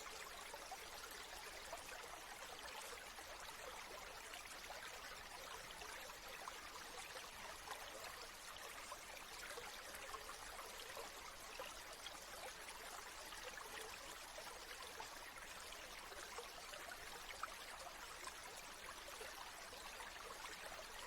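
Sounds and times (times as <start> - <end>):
stream water trickling: 0.0 - 21.0.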